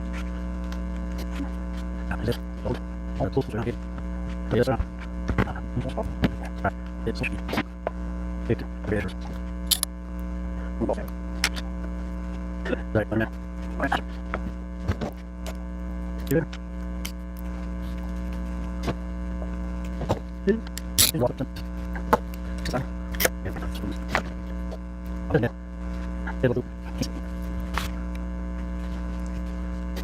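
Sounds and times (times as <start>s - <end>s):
electrical mains hum: 0.0s - 30.0s.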